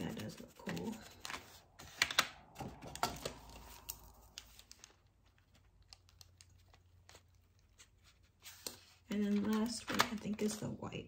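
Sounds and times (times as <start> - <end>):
pencils clicking and tapping: 8.5 - 11.0.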